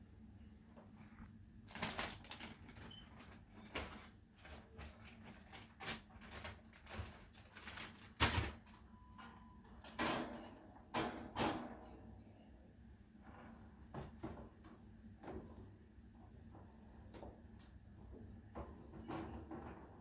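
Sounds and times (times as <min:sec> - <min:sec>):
birdcage knocks and rattles: 0:18.5 - 0:20.0.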